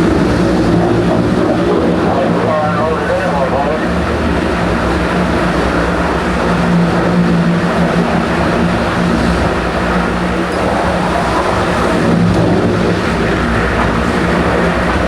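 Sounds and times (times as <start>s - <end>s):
wood chipper running: 3.8s - 15.0s.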